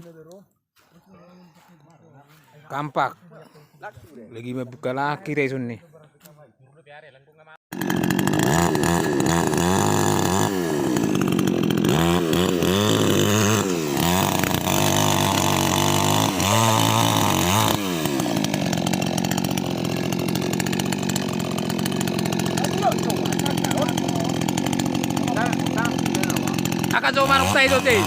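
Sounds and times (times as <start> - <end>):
chainsaw engine revving: 7.7 - 28.0.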